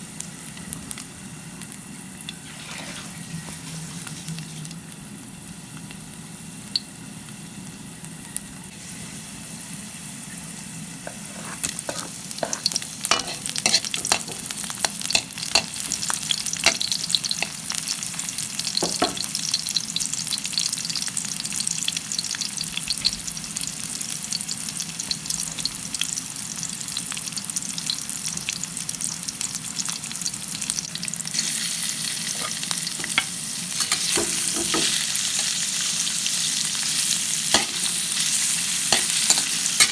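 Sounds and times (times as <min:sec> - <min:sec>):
food sizzling in a pan: 0:00.0 - 0:39.9
utensil scraping a pan: 0:11.1 - 0:14.4, 0:32.2 - 0:35.7.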